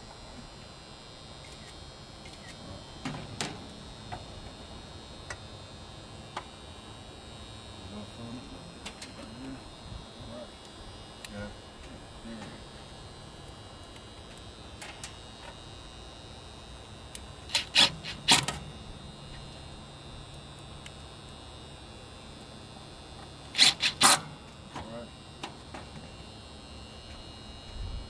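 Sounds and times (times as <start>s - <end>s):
faint steady hum: 0.0s - 28.0s
sharp clicks and clatters: 23.6s - 24.2s.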